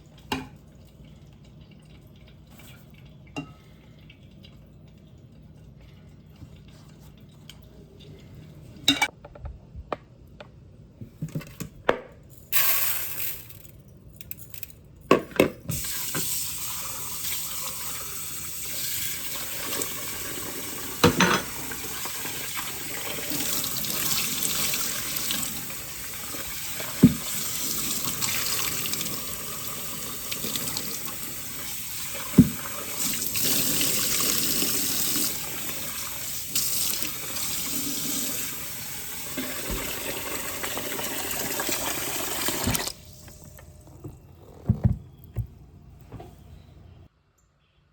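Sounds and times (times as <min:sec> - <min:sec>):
tap water running into sink: 0:15.7 - 0:45.5.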